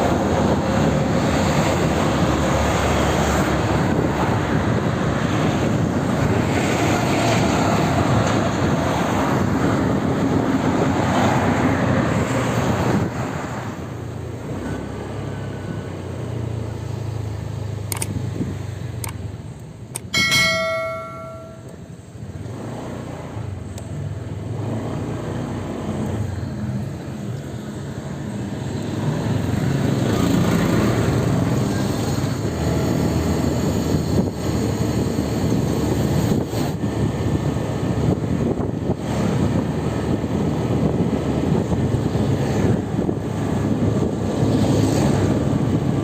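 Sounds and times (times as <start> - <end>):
street traffic: 0.0 - 46.0
metallic bell-like ring: 20.0 - 21.8.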